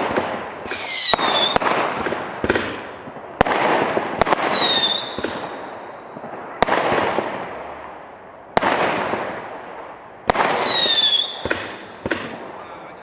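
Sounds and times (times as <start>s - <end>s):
fireworks bangs: 0.0s - 13.0s
fireworks hiss: 0.0s - 13.0s.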